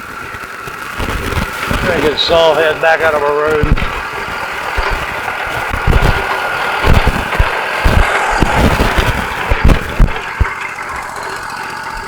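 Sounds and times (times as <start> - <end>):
faint steady whine: 0.0 - 12.0
sawmill engine running: 1.4 - 12.0
low thumps: 3.6 - 10.6.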